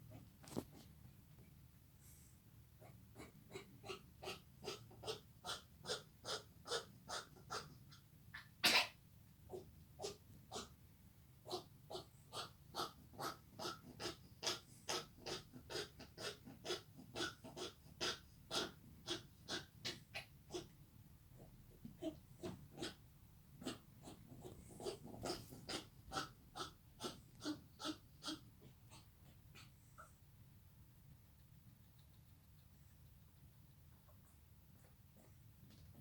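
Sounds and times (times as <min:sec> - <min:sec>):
dog coughing: 0:08.6 - 0:09.0.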